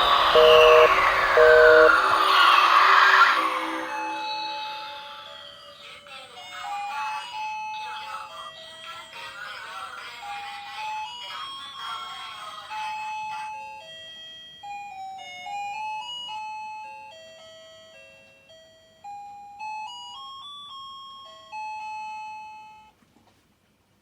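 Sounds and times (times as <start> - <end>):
electronic chime melody: 0.0 - 5.8.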